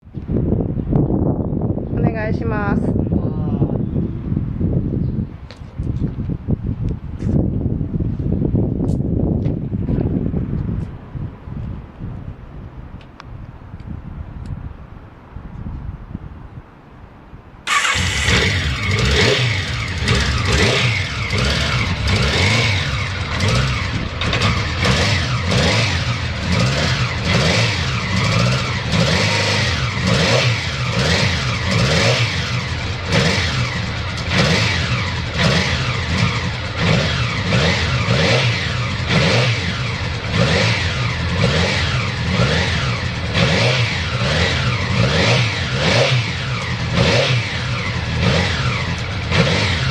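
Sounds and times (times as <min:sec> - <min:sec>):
motorcycle engine running: 0:17.7 - 0:49.9.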